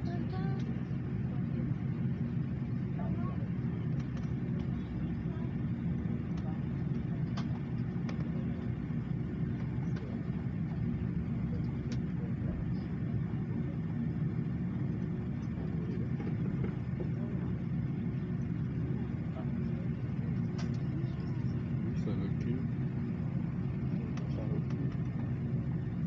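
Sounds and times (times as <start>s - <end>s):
airplane cabin rumble: 0.0s - 26.0s
faint clicks: 20.4s - 20.9s.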